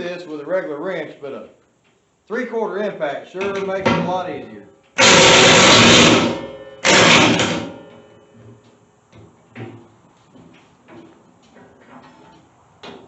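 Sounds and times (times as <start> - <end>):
impact wrench hammering: 3.4 - 4.3, 5.0 - 8.0.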